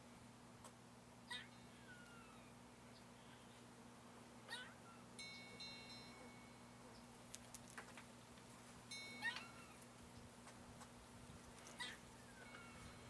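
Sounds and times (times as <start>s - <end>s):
cat-like mewing calls: 1.3s - 2.5s, 4.5s - 5.0s, 11.8s - 12.1s.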